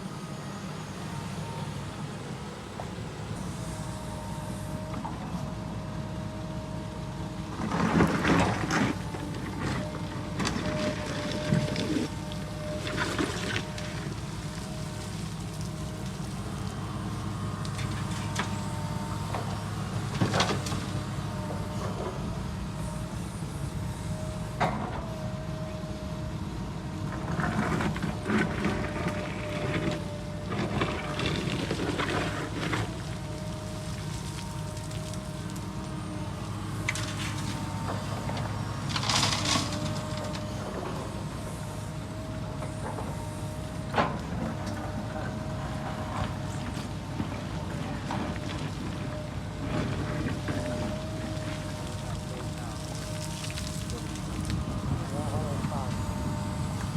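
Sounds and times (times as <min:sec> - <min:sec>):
diesel engine running: 0:00.0 - 0:56.9.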